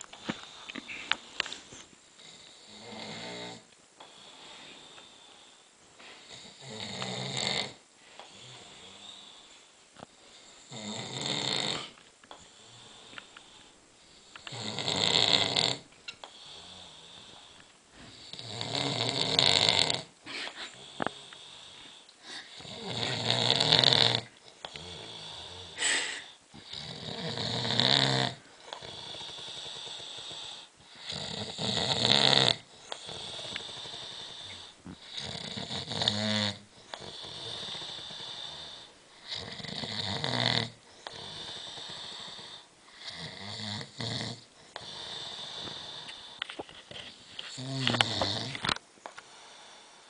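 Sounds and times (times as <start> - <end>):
quiet breathing: 0.0 - 19.4, 20.0 - 50.0
man snoring loudly: 2.2 - 3.6, 6.3 - 9.4, 10.6 - 12.0, 14.5 - 17.2, 18.2 - 20.1, 22.5 - 46.2, 47.6 - 48.6.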